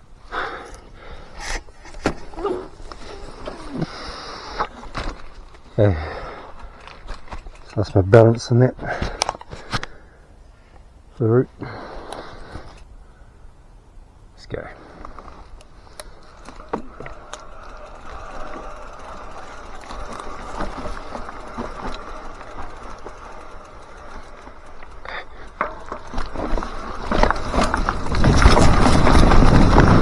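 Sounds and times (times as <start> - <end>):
bike tyres rolling on dirt: 0.0 - 30.0
bike knocks and rattles: 1.4 - 9.8, 15.1 - 30.0.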